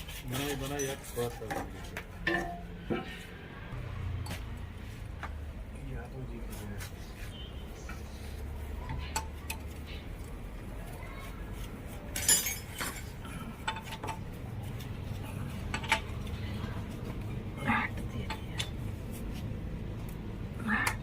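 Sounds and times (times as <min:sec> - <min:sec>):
metal tools clinking: 0:00.3 - 0:02.7, 0:12.1 - 0:14.4, 0:15.4 - 0:16.4.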